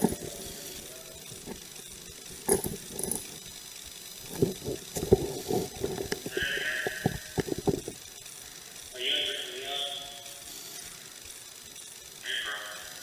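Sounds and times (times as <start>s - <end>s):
rattles: 0.0s - 8.4s.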